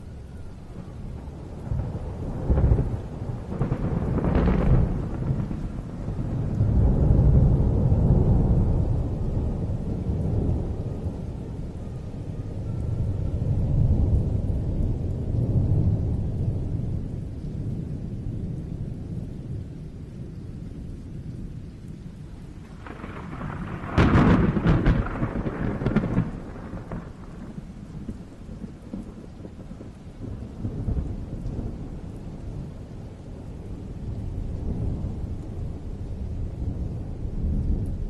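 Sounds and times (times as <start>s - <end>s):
thunder rumbling and cracking: 0.7s - 11.7s, 12.5s - 20.8s, 22.6s - 38.0s
close thunder crack: 1.6s - 9.5s, 22.7s - 29.6s.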